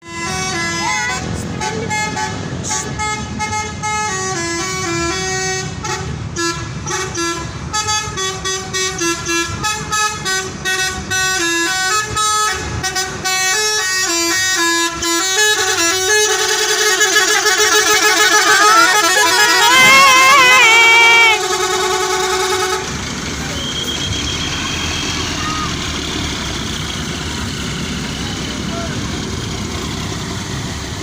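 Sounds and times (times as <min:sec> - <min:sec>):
musical bus horn tune: 0:00.0 - 0:23.3
low engine rumble: 0:00.0 - 0:31.0.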